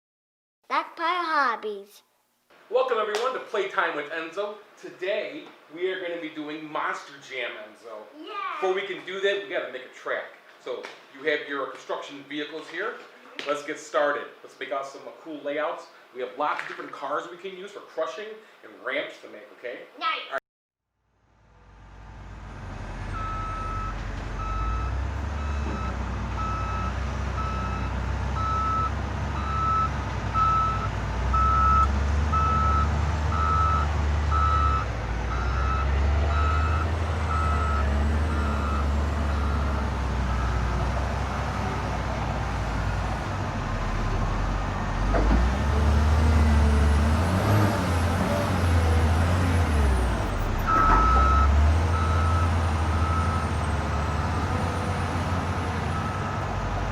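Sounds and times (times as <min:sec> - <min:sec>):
construction vehicle engine rumbling: 0:21.6 - 0:56.9
reversing alarm beeping: 0:23.2 - 0:40.7, 0:50.7 - 0:54.4.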